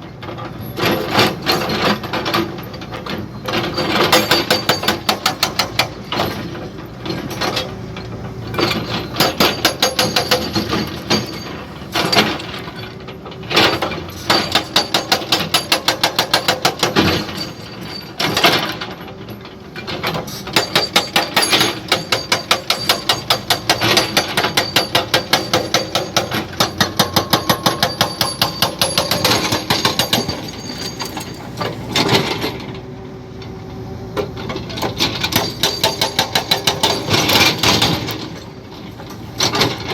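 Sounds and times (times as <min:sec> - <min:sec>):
jackhammer pounding: 0:03.7 - 0:07.6, 0:08.5 - 0:12.8, 0:13.5 - 0:18.8, 0:20.3 - 0:32.6, 0:34.8 - 0:38.4.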